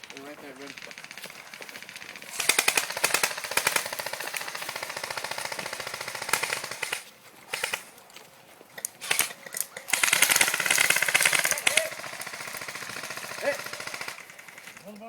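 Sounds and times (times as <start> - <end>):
airsoft gun firing bursts: 0.0 - 8.0, 8.8 - 15.0.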